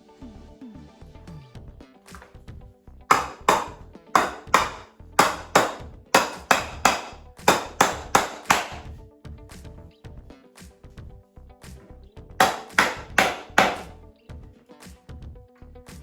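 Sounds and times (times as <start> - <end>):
quiet background music: 0.0 - 16.0
hammer blows: 3.1 - 8.9, 12.4 - 13.9.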